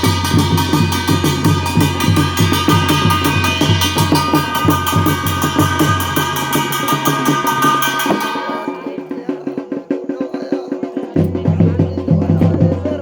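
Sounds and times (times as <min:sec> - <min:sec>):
ringing tones: 0:00.0 - 0:09.6
drums beating fast rhythm: 0:00.0 - 0:13.0.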